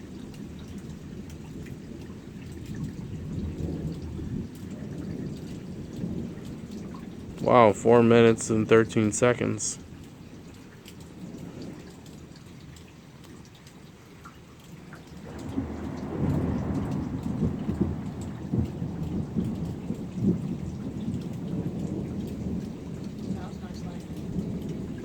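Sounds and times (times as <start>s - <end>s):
low rumble of thunder: 0.0s - 14.0s, 15.0s - 25.0s
steady rain falling: 0.0s - 25.0s.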